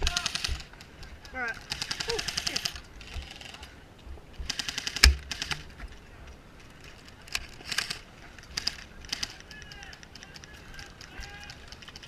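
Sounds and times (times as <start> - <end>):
airsoft guns firing bursts: 0.0 - 0.7, 1.6 - 3.6, 4.4 - 5.7.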